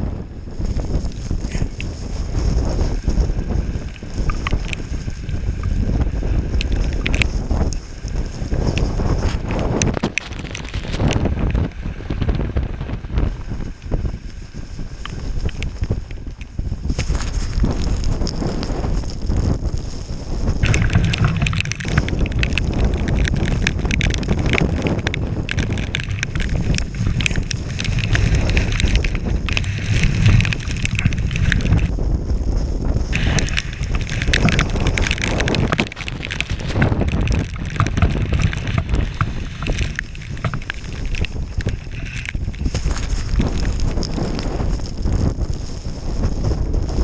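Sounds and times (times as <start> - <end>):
wind buffeting microphone: 0.0 - 47.0
crackle of sharp clicks: 3.9 - 5.7, 6.5 - 7.8, 8.7 - 12.4, 15.0 - 18.4, 20.6 - 31.9, 33.1 - 44.6.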